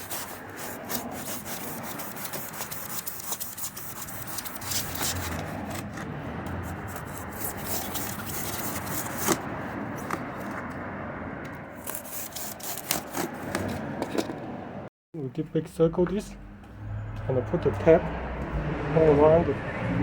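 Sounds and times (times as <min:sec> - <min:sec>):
rubbing and scraping: 0:00.0 - 0:14.6.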